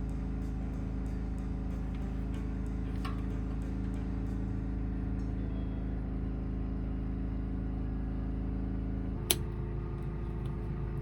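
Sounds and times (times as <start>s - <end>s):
engine droning: 0.0s - 11.0s
sharp click: 9.2s - 9.5s.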